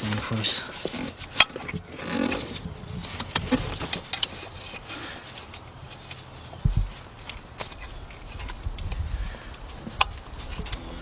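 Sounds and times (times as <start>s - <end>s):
low thump: 6.6s - 6.9s.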